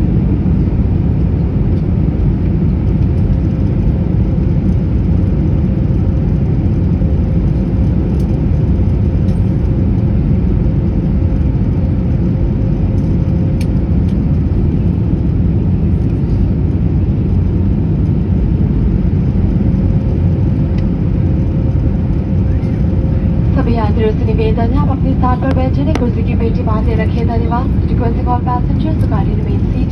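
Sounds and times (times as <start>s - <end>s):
low rumble in aircraft cabin: 0.0s - 29.9s
faint steady hum: 19.4s - 29.9s.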